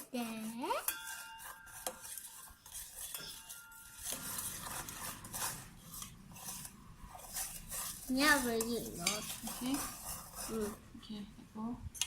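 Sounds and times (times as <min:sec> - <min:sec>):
spoon clinking in a bowl: 0:00.8 - 0:04.5.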